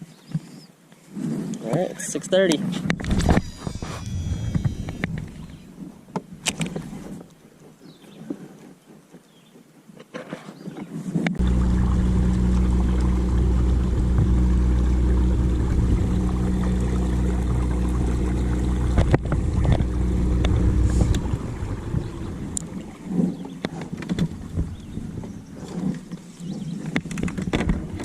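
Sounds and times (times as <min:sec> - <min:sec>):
boat motor humming: 0:03.1 - 0:05.7, 0:11.4 - 0:26.2.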